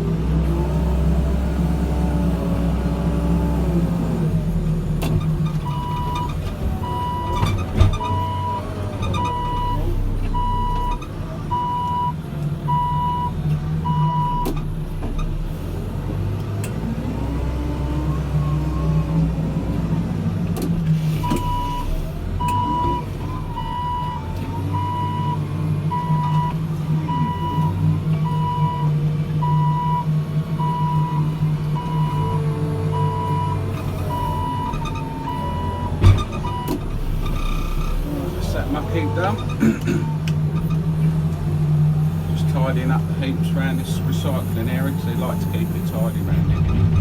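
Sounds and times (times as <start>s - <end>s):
diesel engine revving: 0.0s - 47.0s
reversing alarm beeps: 8.0s - 9.8s, 10.4s - 14.5s, 21.2s - 32.4s.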